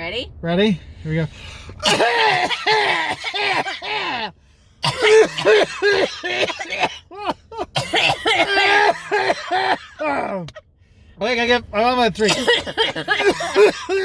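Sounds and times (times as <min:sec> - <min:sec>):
people coughing hard: 0:01.8 - 0:10.6, 0:12.3 - 0:14.0.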